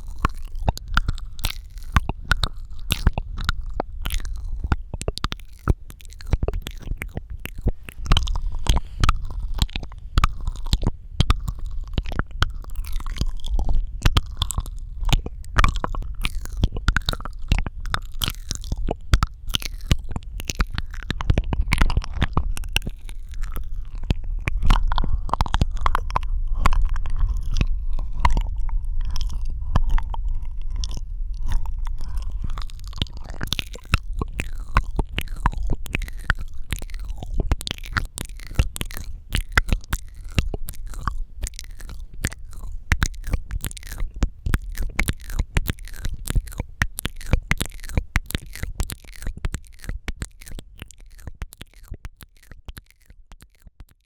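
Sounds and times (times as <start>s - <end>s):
mouth clicks and lip smacks: 0.0s - 54.0s
low rumble: 5.7s - 12.1s.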